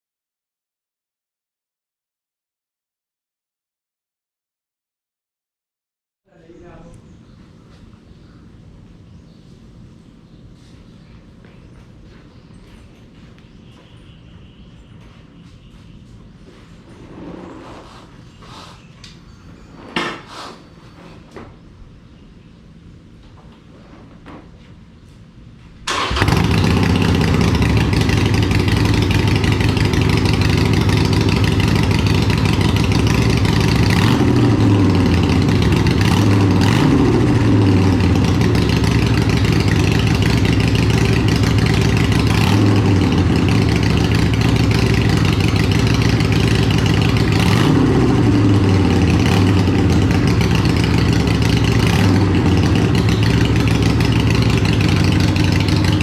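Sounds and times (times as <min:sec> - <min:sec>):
motorcycle engine idling and revving: 0:25.9 - 0:56.0.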